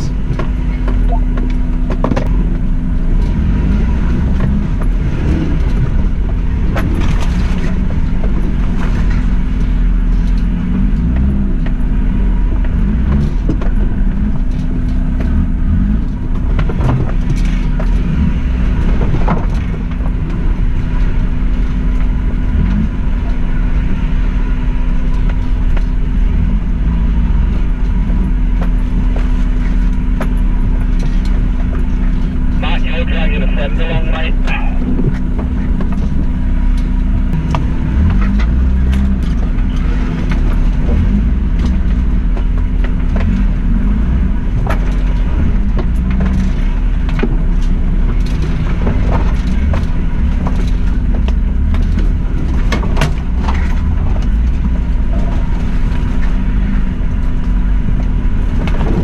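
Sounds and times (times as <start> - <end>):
knocks and clunks: 0.0 - 2.6
car engine running: 0.0 - 59.0.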